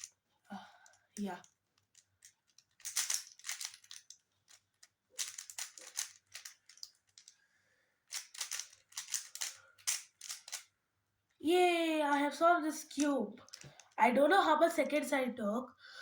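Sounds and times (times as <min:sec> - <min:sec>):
puzzle cube plastic clicking: 0:00.9 - 0:07.3, 0:08.1 - 0:10.7, 0:12.8 - 0:14.0.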